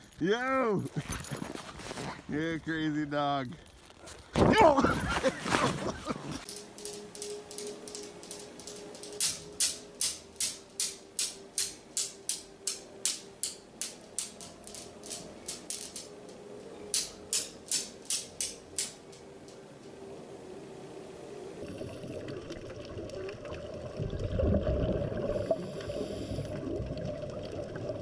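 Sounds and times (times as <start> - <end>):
faint steady hum: 0.0 - 28.0
rhythmic rattling: 5.3 - 20.3.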